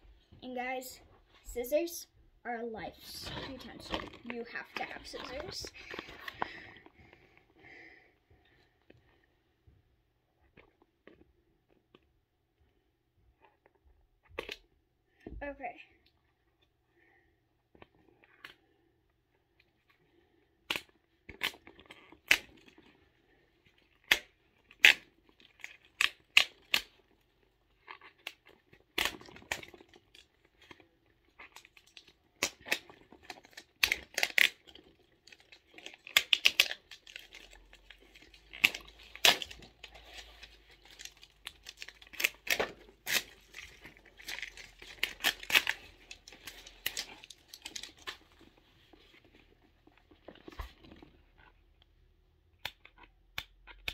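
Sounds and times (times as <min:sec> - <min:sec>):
plastic crinkling: 0:24.8 - 0:51.3
scissors snipping plastic: 0:31.5 - 0:48.4.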